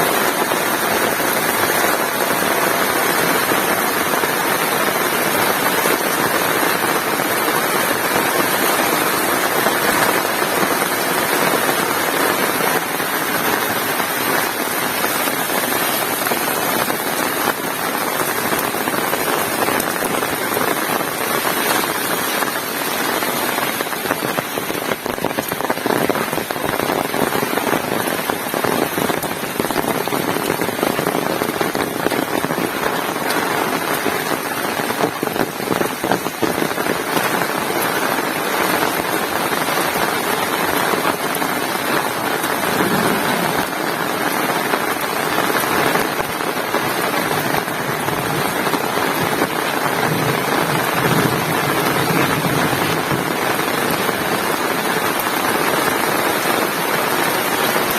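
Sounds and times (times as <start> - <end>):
heavy rain falling: 0.0 - 57.9.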